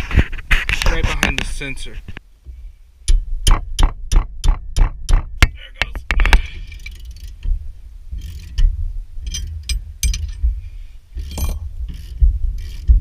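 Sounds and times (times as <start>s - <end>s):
ratchet wrench clicking: 8.2s - 8.6s, 11.2s - 12.9s.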